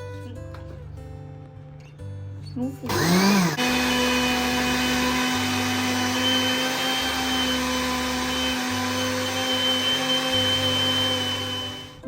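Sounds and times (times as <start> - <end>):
electric blender grinding: 2.9 - 12.0.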